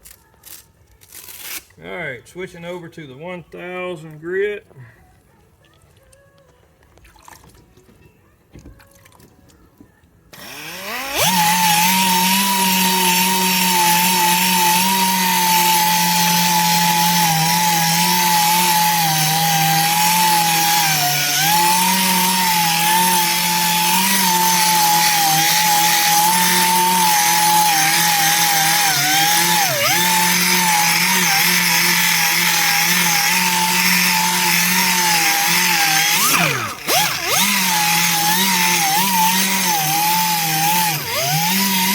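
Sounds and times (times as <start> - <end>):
power sander whining: 10.3 - 41.9.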